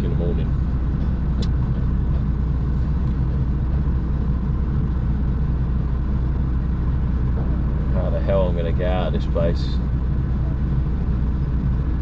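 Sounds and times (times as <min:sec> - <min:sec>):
lorry diesel engine drone: 0:00.0 - 0:12.0.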